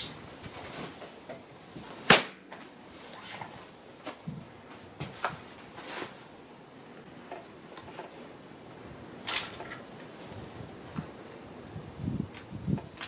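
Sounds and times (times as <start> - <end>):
shotgun metallic clicks: 9.2 - 9.8.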